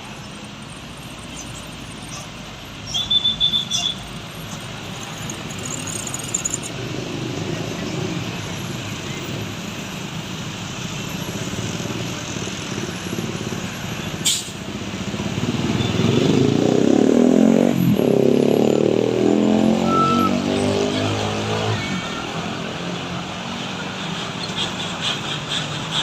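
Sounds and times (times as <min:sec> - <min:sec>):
diesel truck engine: 0:00.0 - 0:26.0
heavy trucks passing: 0:00.0 - 0:26.0
short sharp hiss: 0:14.2 - 0:14.6.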